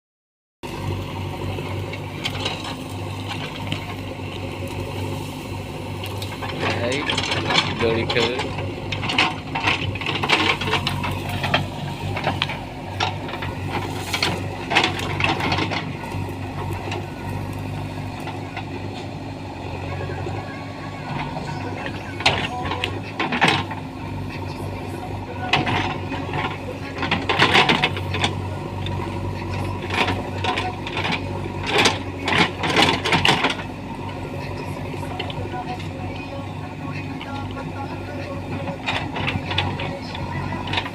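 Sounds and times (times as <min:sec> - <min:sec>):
diesel engine running: 0:00.6 - 0:40.9
crunching and scraping: 0:01.8 - 0:19.1
machine clanks and knocks: 0:06.2 - 0:18.7, 0:21.1 - 0:23.9, 0:25.4 - 0:28.4, 0:29.4 - 0:33.7.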